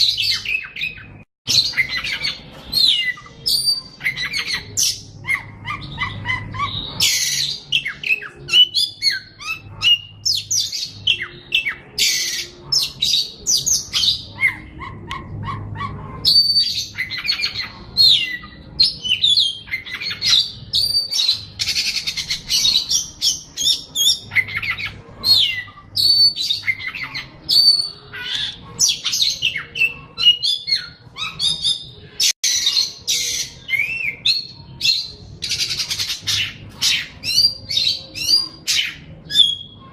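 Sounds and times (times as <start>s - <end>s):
songbird singing: 0.0s - 39.9s.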